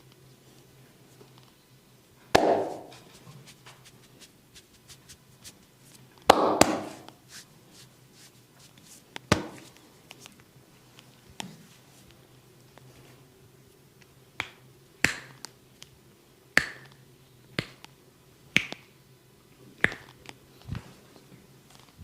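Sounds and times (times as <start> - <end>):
hands slapping bare skin: 2.3 - 10.2, 14.4 - 15.5, 16.6 - 16.9, 17.6 - 17.8, 18.6 - 18.9, 19.8 - 20.1.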